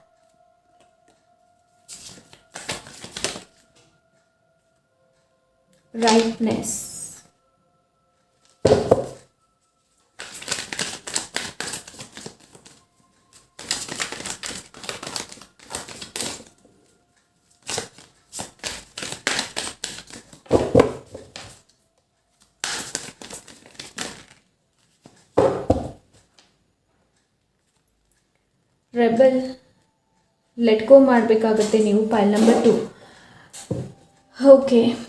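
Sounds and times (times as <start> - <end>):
cards being shuffled: 1.9 - 3.6, 10.2 - 16.5, 17.5 - 21.6, 22.6 - 25.2.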